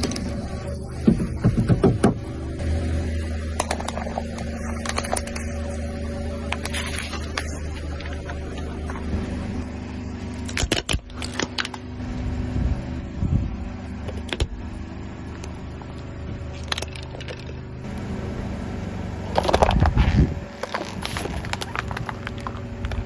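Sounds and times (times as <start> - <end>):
objects crunching under tyres: 16.6 - 23.0
car engine running: 17.8 - 23.0.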